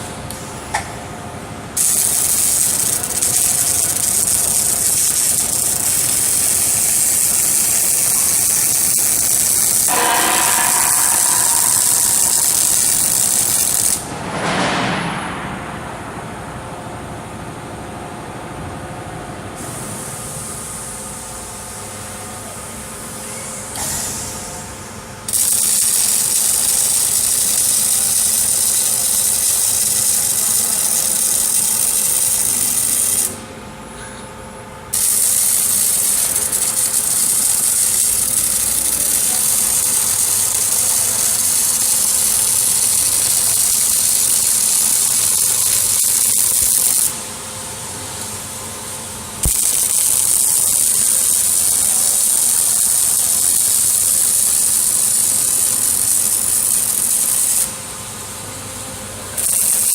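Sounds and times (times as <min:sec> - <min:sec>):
low machine hum: 0:00.0 - 0:45.9
hissing welding arc: 0:01.7 - 0:14.1, 0:23.7 - 0:33.4, 0:34.9 - 0:58.6, 0:59.2 - 0:59.9.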